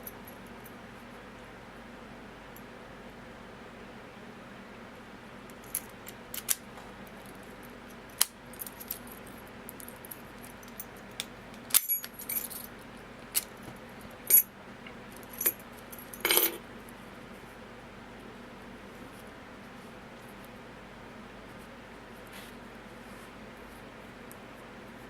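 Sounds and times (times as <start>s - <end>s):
lock picks clicking and rattling: 11.7s - 12.6s.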